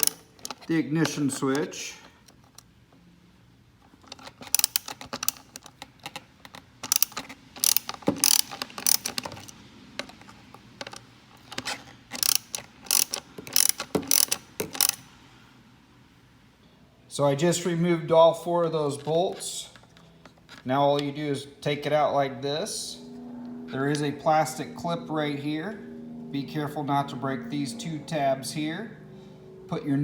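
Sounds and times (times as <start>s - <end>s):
socket ratchet clicking: 0.0s - 1.6s, 4.0s - 15.1s.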